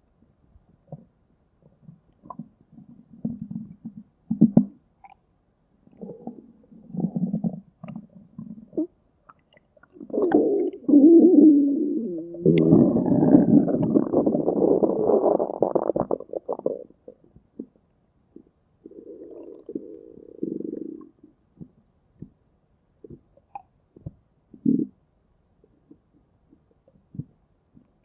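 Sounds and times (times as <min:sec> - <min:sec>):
stomach growling: 0:00.9 - 0:04.7, 0:05.9 - 0:17.8, 0:18.4 - 0:22.3.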